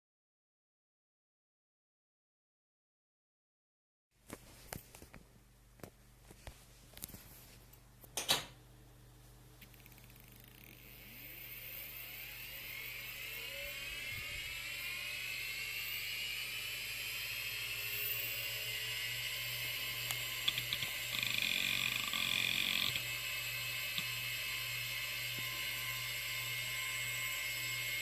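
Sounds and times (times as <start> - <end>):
low hum: 8.9 - 28.0
hard drive whine: 9.6 - 28.0.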